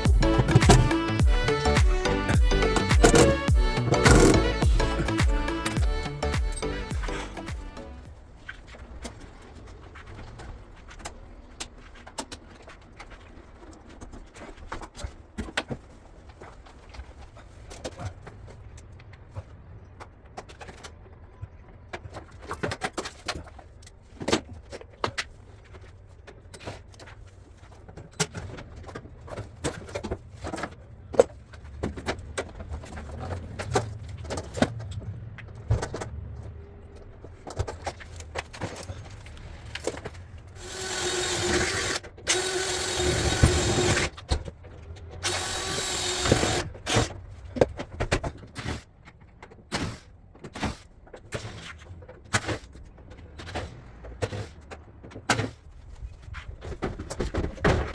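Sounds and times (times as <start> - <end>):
power drill-driver running: 0.0 - 7.5, 40.6 - 44.2, 45.2 - 46.7
clicks and knocks of parts handled: 9.0 - 40.6.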